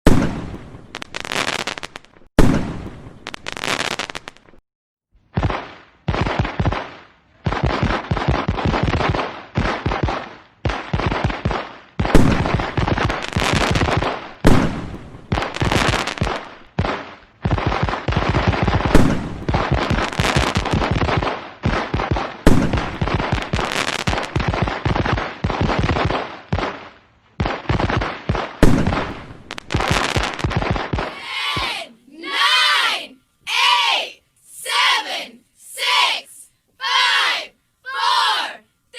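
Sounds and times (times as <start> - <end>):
fireworks crackling and banging: 0.0 - 4.6, 5.2 - 33.1
crowd shouting: 31.1 - 38.7.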